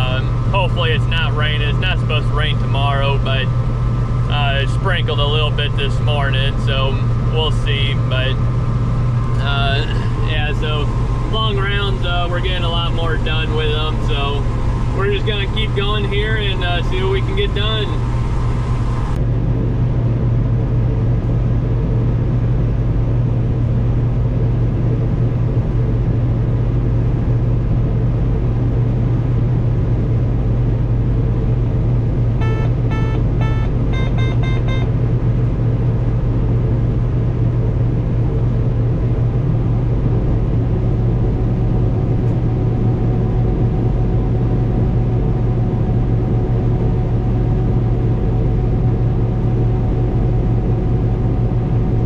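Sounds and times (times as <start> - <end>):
combine harvester running: 0.0 - 52.0
short electronic beeps: 32.4 - 35.0.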